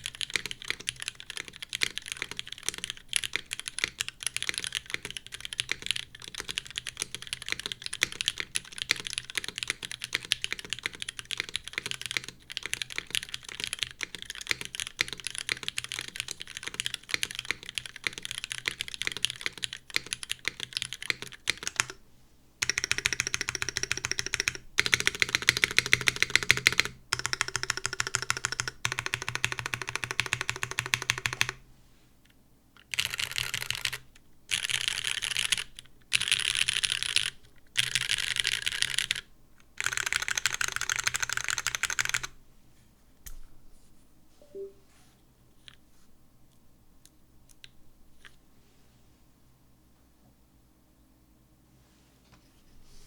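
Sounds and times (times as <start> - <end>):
mechanical keyboard typing: 0.0 - 22.0, 22.6 - 31.6, 32.8 - 42.3
rapid repeated key presses: 0.0 - 22.0, 22.6 - 31.6, 32.8 - 42.4.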